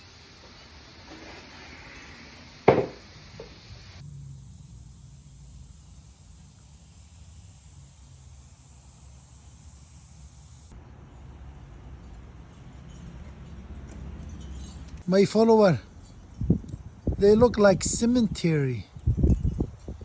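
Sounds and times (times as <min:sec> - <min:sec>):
faint tap: 0:02.6 - 0:03.5
sharp knock: 0:02.6 - 0:03.5.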